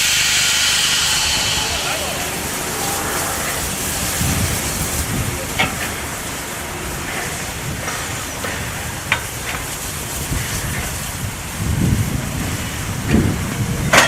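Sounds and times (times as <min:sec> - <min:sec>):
low rumble: 0:00.0 - 0:08.0
steam hissing: 0:00.0 - 0:14.0.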